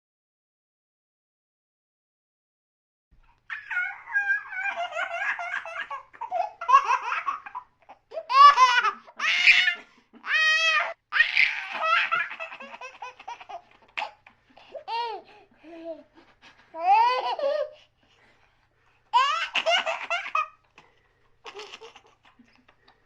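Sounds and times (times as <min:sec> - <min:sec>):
baby laughing: 0:03.5 - 0:16.1, 0:16.7 - 0:17.8, 0:19.1 - 0:20.8, 0:21.4 - 0:22.6.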